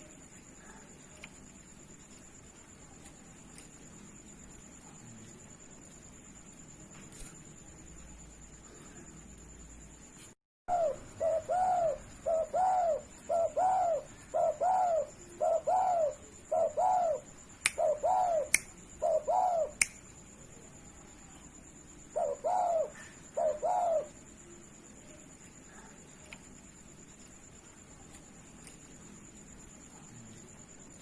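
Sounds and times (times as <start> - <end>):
faint high-pitched tone: 0.0 - 17.5, 20.0 - 31.0
dove cooing: 10.7 - 19.8, 22.1 - 24.1
sharp clicks: 19.8 - 20.1.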